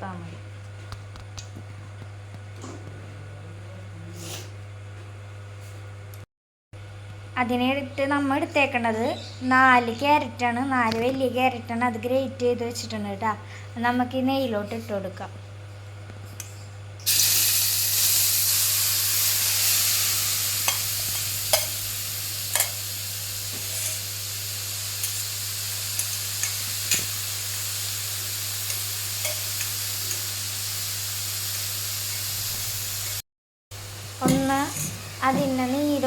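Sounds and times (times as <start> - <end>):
carrots sizzling in hot pan: 17.1 - 33.2.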